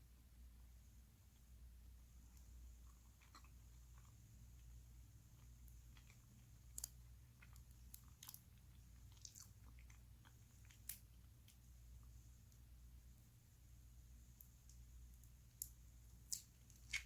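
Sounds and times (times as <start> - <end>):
person chewing: 2.8 - 4.7, 5.3 - 12.1, 14.4 - 17.0.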